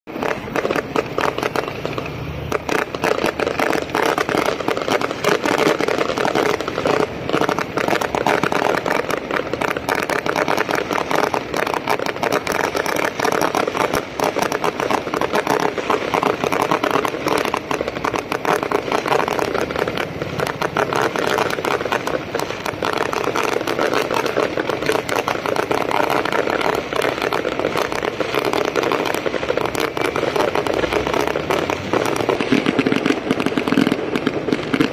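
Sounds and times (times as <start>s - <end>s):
firecrackers crackling: 0.0s - 34.9s.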